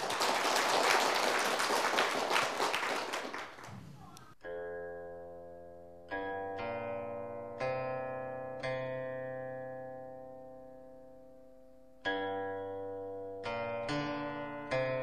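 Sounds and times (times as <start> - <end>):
audience applause: 0.0 - 4.4
plucked string notes ringing: 4.4 - 15.0.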